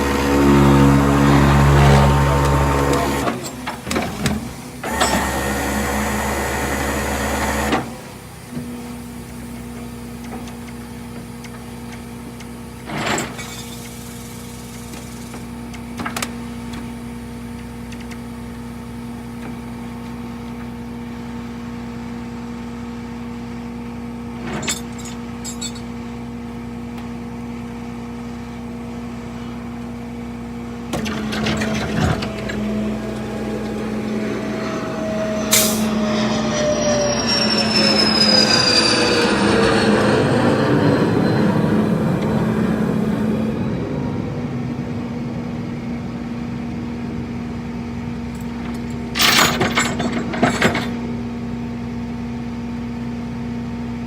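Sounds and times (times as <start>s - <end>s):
truck engine running: 0.0s - 54.0s
whine falling in pitch: 31.0s - 45.5s.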